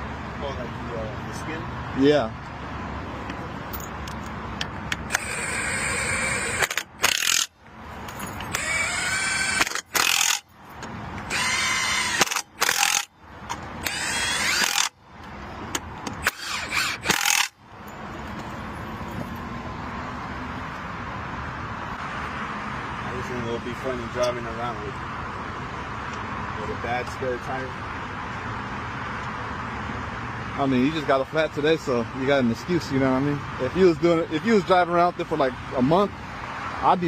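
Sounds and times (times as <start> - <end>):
impact wrench spinning lug nuts: 4.9 - 17.6.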